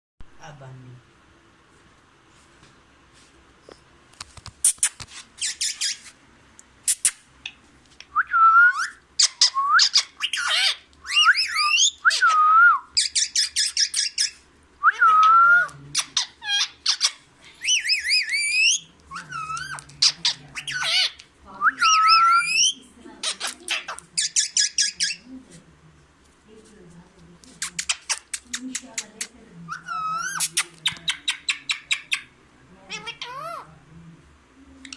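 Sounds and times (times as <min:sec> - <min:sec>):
parrot screeching and talking: 0:04.7 - 0:06.1, 0:08.8 - 0:25.3, 0:27.6 - 0:33.7.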